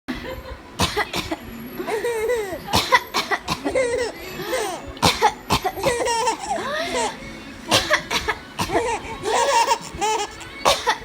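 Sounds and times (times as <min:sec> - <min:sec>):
woman fake coughing: 0:00.8 - 0:04.0, 0:07.7 - 0:08.9, 0:10.7 - 0:11.0.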